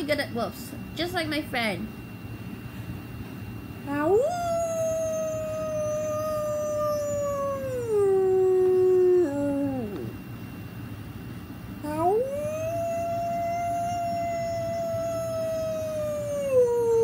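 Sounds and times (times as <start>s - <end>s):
person imitating wolf howl: 3.9s - 10.2s, 11.8s - 17.0s.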